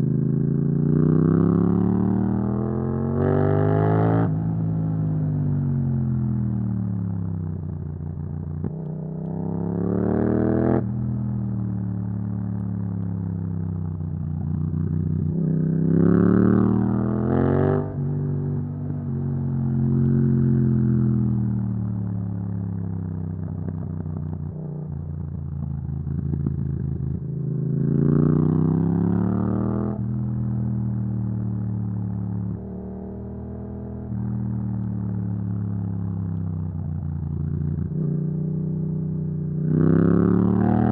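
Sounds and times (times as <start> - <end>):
motorcycle engine revving: 0.0 - 7.7, 8.5 - 11.6, 13.2 - 40.9.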